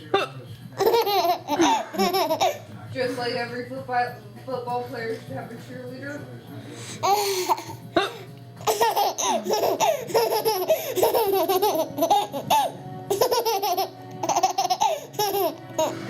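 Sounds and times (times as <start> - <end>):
baby laughing: 0.8 - 2.6, 7.0 - 7.8, 8.6 - 16.0.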